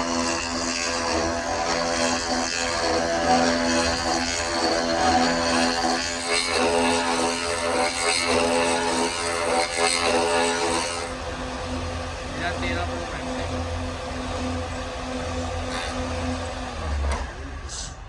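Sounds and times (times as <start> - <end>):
power tool motor humming: 0.0 - 18.0
hiss: 17.7 - 18.0.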